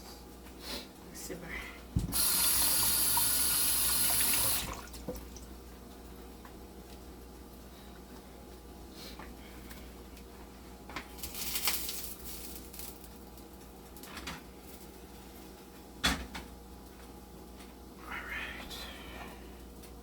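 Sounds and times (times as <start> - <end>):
knocks in kitchen: 2.0 - 2.2.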